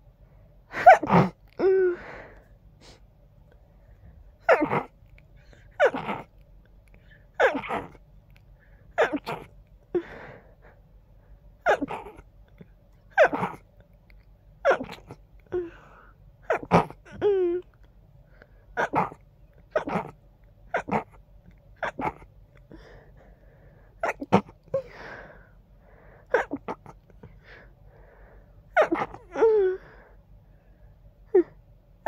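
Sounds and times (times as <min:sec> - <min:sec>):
person sneezing: 0:00.8 - 0:01.4.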